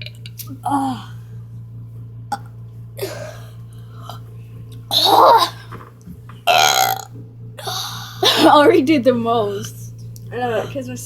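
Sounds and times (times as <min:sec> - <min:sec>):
steady low hum: 0:00.0 - 0:11.0
person burping: 0:06.5 - 0:07.8.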